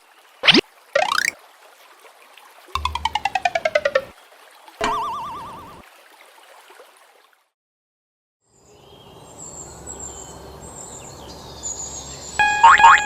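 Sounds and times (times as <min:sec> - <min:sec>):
warbling tone: 0:00.5 - 0:01.4, 0:02.8 - 0:04.1
high bird chirps: 0:01.0 - 0:01.4.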